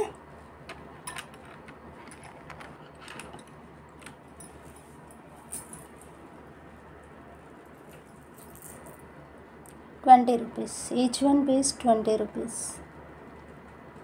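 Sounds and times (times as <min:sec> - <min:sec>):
metal jewellery clinking: 0:01.0 - 0:06.2, 0:08.1 - 0:09.0.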